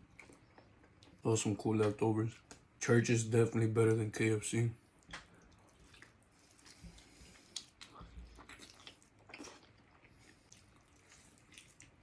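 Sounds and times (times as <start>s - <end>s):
chewing and wet mouth clicks: 0.1s - 1.2s, 5.0s - 12.0s.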